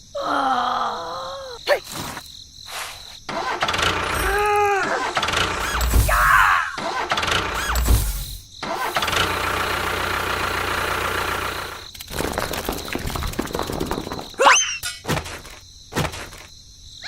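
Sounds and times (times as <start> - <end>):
small motor running: 3.3 - 6.5, 7.1 - 11.9.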